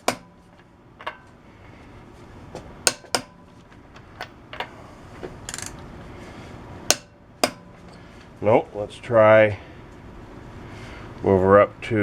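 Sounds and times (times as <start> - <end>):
torque wrench clicking: 5.5 - 5.8.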